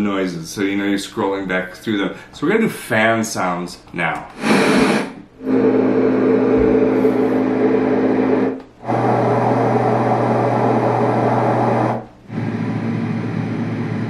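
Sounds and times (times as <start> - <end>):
white noise machine fan whir: 4.4 - 14.0.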